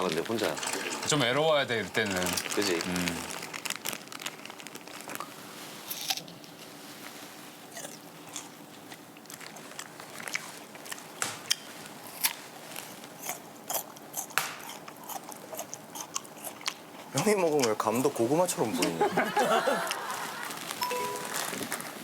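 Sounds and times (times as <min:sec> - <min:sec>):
crunchy chewing: 0:02.2 - 0:18.0.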